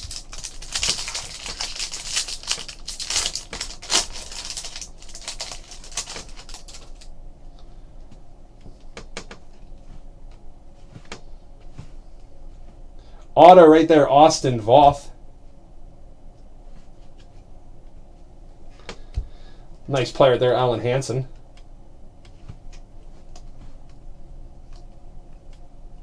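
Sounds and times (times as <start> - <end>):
card packs crackling: 0.0 - 7.1.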